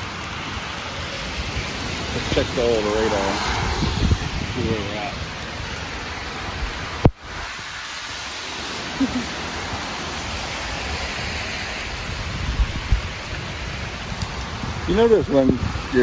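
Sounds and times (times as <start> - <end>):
heavy rain and wind hiss: 0.0 - 16.0
wind thumps on microphone: 3.5 - 5.2, 12.0 - 16.0.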